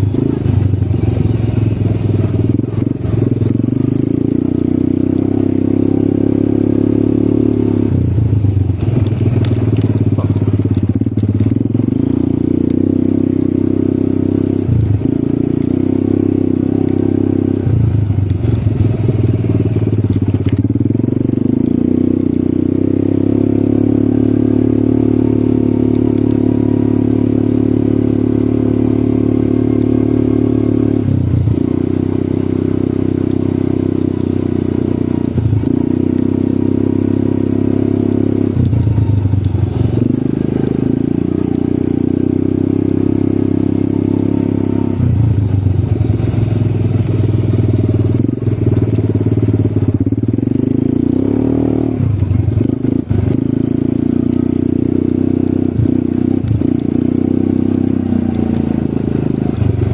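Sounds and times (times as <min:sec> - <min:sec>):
atv engine running: 0:00.0 - 0:59.9
clicks and crackles: 0:08.7 - 0:12.0, 0:14.5 - 0:15.8, 0:18.1 - 0:22.4, 0:25.9 - 0:26.4, 0:38.5 - 0:41.7, 0:43.7 - 0:50.4, 0:52.0 - 0:59.9.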